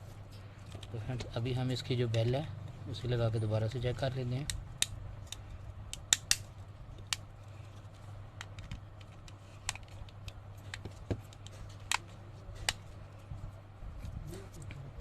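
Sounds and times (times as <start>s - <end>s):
steady low hum: 0.0s - 15.0s
small clicks and taps of handling: 7.0s - 12.9s.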